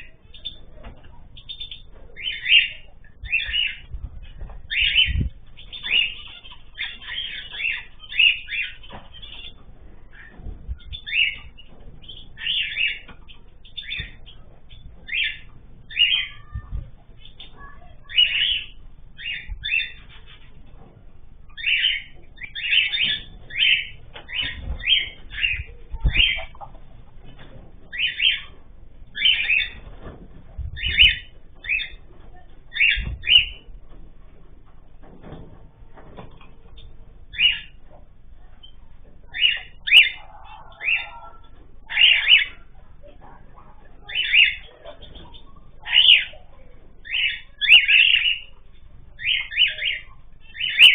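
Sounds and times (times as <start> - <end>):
birds chirping and squawking: 0.0 - 50.9
soft low thumps: 2.9 - 6.2, 8.7 - 18.0.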